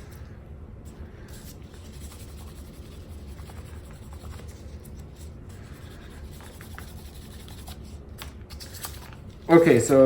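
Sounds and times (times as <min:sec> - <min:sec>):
steady low hum: 0:00.0 - 0:10.0
sandpaper scratching wood: 0:01.3 - 0:08.0.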